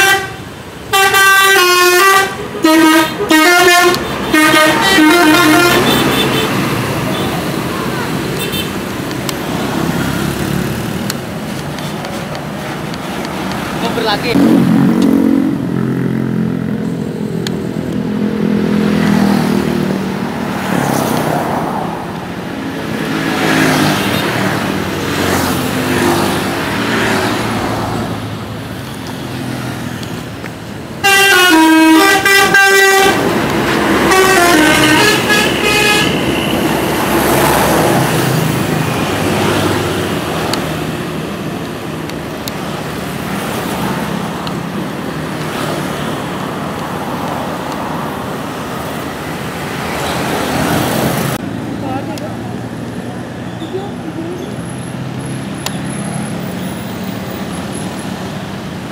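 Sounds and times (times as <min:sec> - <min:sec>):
multi-tone bus horn melody: 0:00.0 - 0:08.8, 0:31.0 - 0:37.8
heavy bus engine: 0:00.0 - 0:58.9
traffic noise: 0:00.0 - 0:58.9.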